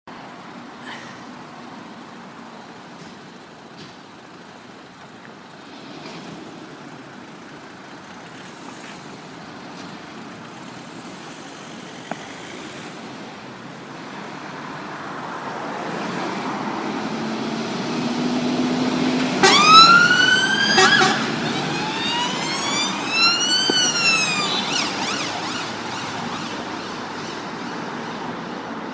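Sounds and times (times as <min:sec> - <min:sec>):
vehicle engine and road noise: 0:00.1 - 0:28.9
siren wailing: 0:19.4 - 0:27.3.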